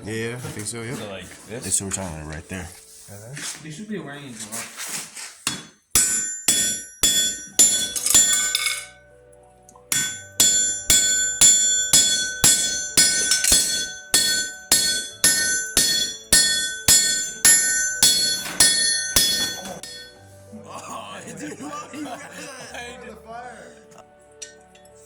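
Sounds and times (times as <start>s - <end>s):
hammer ringing on anvil: 5.5s - 9.0s, 9.9s - 20.2s.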